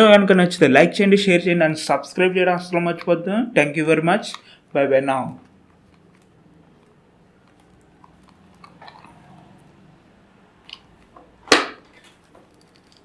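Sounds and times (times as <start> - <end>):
loud sharp knock: 11.5 - 11.8
small clicks and rustles: 11.9 - 13.0.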